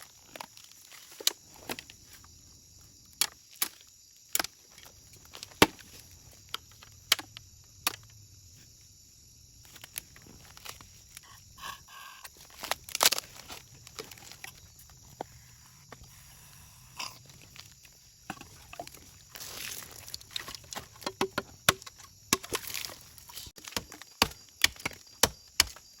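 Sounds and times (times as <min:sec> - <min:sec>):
chopping knocks on bamboo: 0:23.6 - 0:25.8.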